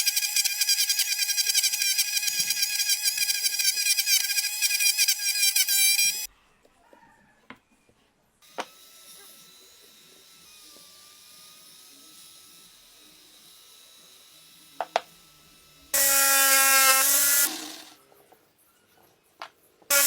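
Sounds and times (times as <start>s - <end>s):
power tool motor whine: 0.0s - 6.3s, 15.9s - 18.0s.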